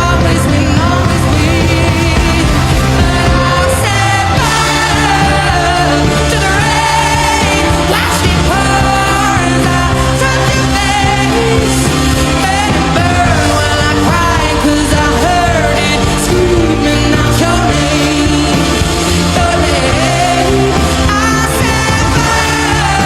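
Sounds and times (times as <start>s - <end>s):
full band playing: 0.0s - 23.0s
person singing with vibrato: 0.0s - 23.0s.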